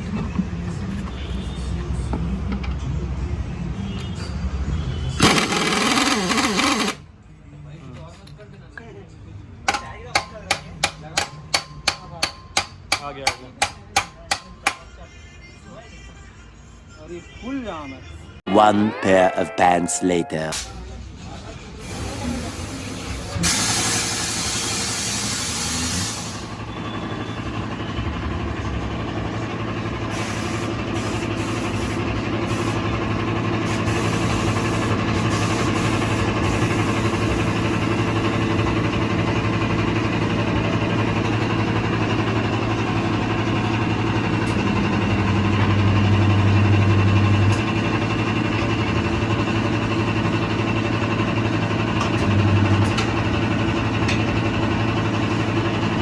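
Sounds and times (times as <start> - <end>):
vehicle engine idling: 20.8 - 56.0
hiss: 21.8 - 26.5.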